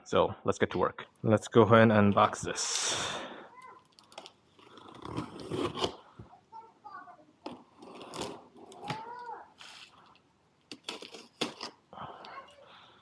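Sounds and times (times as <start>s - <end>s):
cardboard packaging crinkling and tearing: 3.9s - 6.0s, 7.5s - 10.1s, 10.7s - 11.8s.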